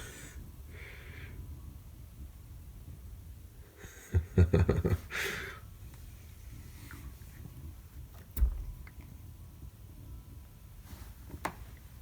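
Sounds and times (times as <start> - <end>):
cat thumping and knocking at door: 8.4 - 8.9.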